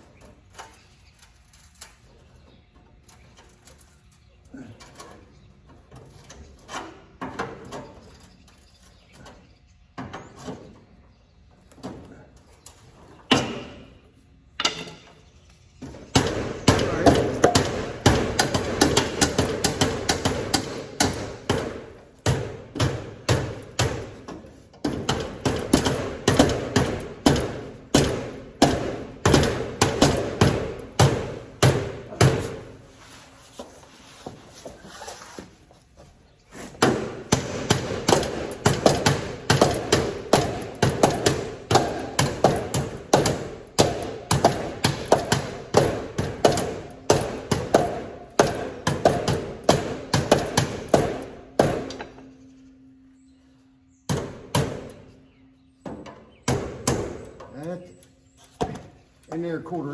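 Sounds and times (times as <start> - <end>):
hammer on metal: 36.8 - 52.2.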